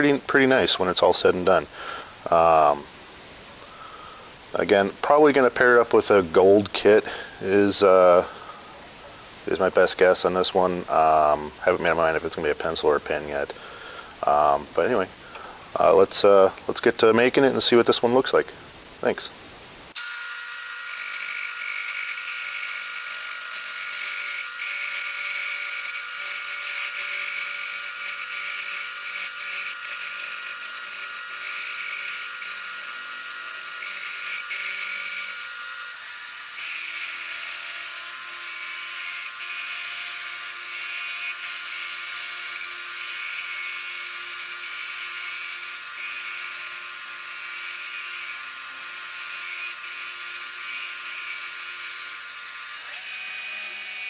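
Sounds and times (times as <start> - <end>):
woodworking power tool whining: 19.9 - 54.0.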